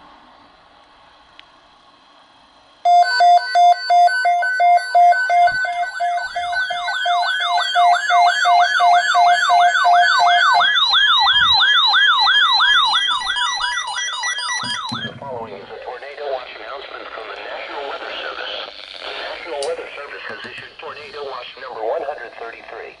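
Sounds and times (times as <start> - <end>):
rapid electronic beeping: 2.9 - 19.6
falling siren-like whoop: 5.4 - 15.2.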